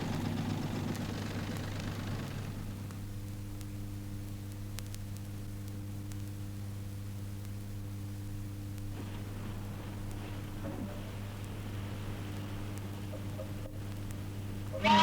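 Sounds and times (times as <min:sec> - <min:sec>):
electrical mains hum: 0:00.0 - 0:15.0
soft hiss: 0:01.0 - 0:15.0
faint crackle clicks: 0:02.8 - 0:14.7.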